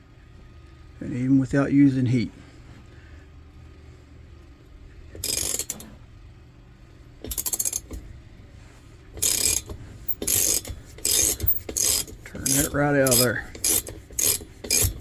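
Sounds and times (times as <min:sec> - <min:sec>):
ratchet wrench clicking: 0:05.2 - 0:05.8, 0:07.3 - 0:08.0, 0:09.2 - 0:15.0.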